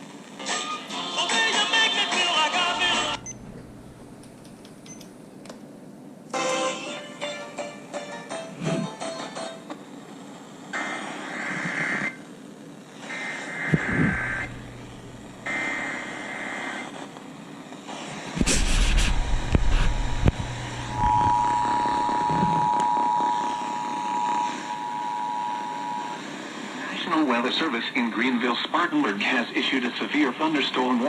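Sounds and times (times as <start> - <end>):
rough radio static and rumble: 2.7 - 4.4, 10.8 - 12.2, 12.9 - 17.1, 17.9 - 30.0
buzzing two-tone data bursts: 13.6 - 16.5, 19.9 - 26.2
two-tone attention signal: 20.9 - 26.2.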